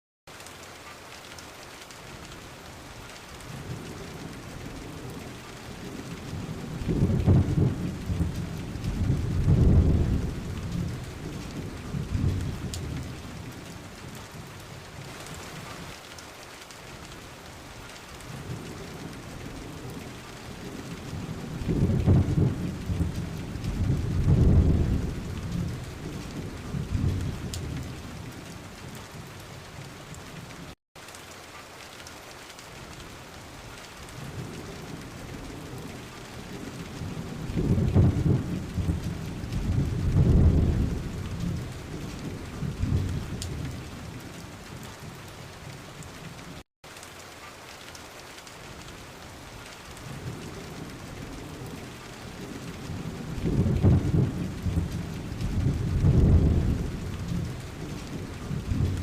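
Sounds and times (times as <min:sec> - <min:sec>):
steady rain: 0:00.3 - 0:59.0
rolling thunder: 0:03.5 - 0:14.3, 0:18.3 - 0:29.2, 0:34.1 - 0:44.9, 0:50.0 - 0:59.0.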